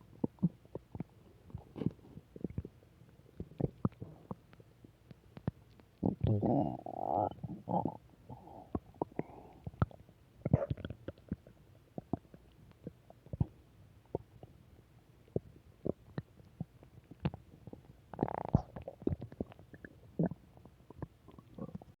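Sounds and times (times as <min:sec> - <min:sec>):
stomach gurgling: 0:00.0 - 0:22.0.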